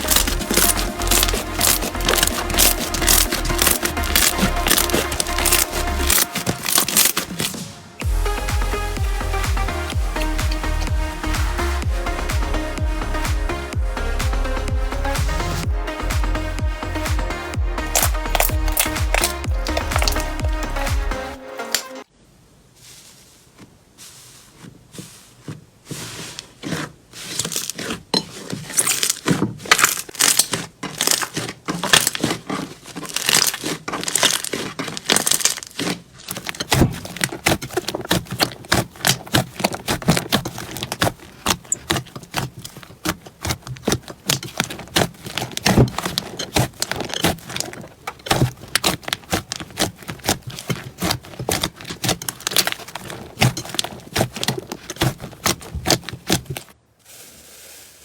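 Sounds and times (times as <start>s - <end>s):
slime crackling and popping: 0.0s - 10.8s, 17.8s - 21.1s, 28.7s - 56.8s.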